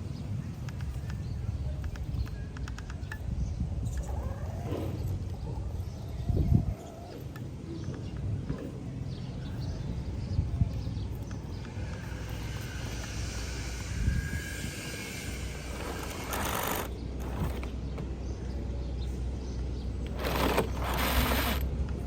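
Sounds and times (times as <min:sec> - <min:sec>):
radio-controlled car running: 0:12.2 - 0:17.8, 0:20.1 - 0:21.7.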